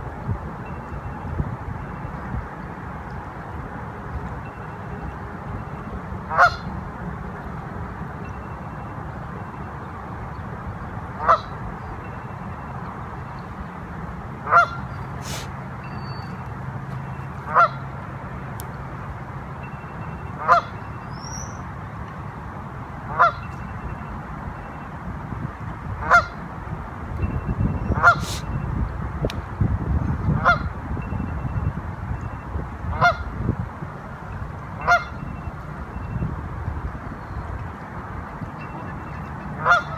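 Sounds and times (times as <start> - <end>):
goose honking: 14.5 - 15.5, 38.8 - 39.9.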